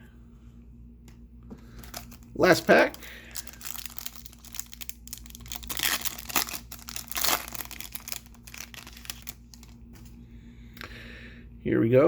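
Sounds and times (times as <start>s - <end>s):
foil wrapper crinkling and tearing: 1.7s - 9.8s.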